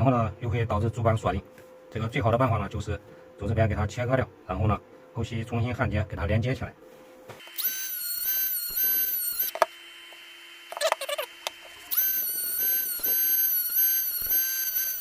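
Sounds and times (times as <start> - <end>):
rotary tool cutting metal: 7.4 - 9.7, 10.7 - 15.0.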